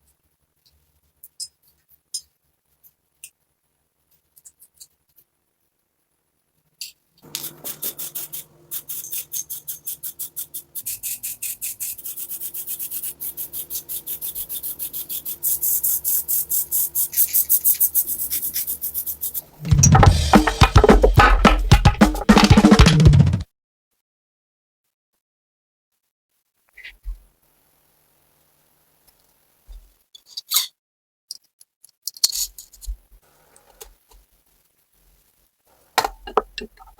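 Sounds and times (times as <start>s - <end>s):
abrasive rubbing strokes: 7.3s - 23.4s
drum-led music: 19.6s - 23.4s.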